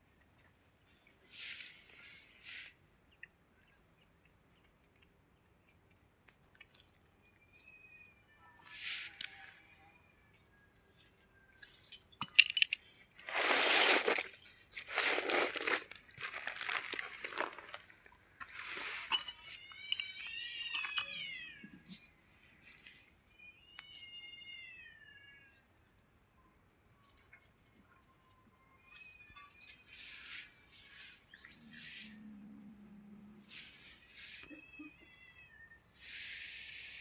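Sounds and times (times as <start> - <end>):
light clinks: 11.5 - 13.0, 19.1 - 21.2
cat meowing: 19.3 - 21.9, 34.4 - 35.8.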